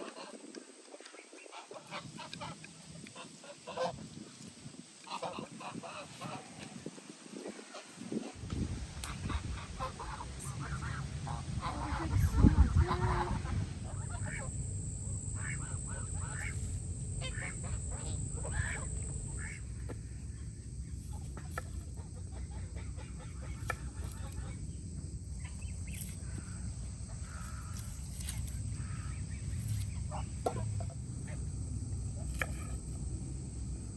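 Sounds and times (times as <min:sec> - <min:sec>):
steady low rumble: 0:08.3 - 0:33.9.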